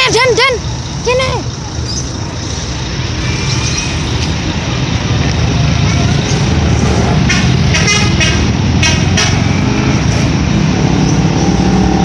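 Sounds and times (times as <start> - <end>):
engine rumble: 0.0 - 12.0
musical vehicle horn notes: 7.4 - 9.4.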